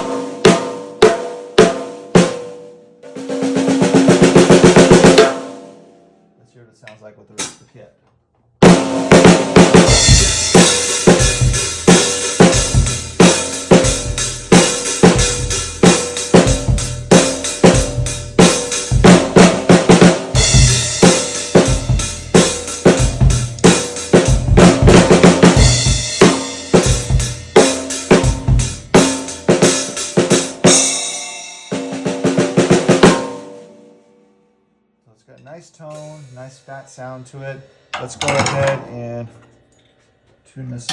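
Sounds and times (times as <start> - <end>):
snare drum: 3.2 - 5.5, 8.6 - 31.0, 31.7 - 33.6
bass drum: 8.6 - 30.9
cymbals: 8.7 - 32.2, 35.7 - 38.8.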